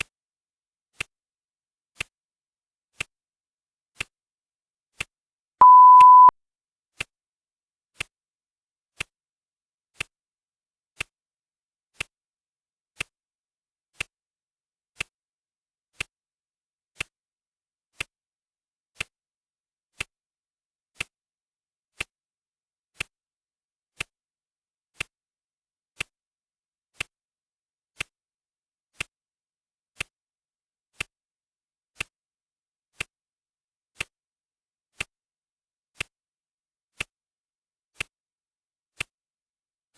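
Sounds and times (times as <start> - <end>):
high electronic timer beep: 5.6 - 6.3.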